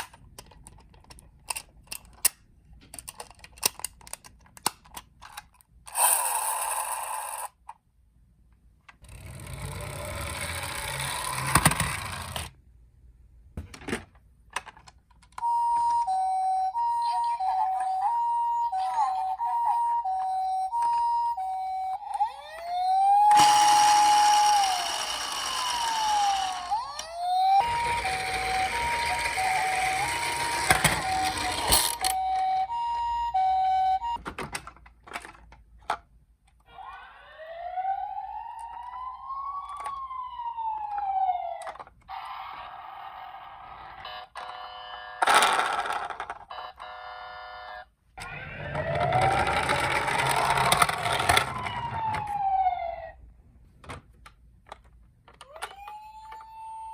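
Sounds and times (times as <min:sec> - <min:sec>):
siren wailing: 0:15.4 - 0:34.2, 0:36.7 - 0:45.1, 0:46.5 - 0:53.2, 0:55.4 - 0:56.9
two-note ambulance siren: 0:15.4 - 0:34.2, 0:36.8 - 0:45.3, 0:46.5 - 0:53.2, 0:55.5 - 0:56.9
fast warbling siren: 0:16.4 - 0:34.2, 0:36.7 - 0:43.8, 0:46.9 - 0:53.2.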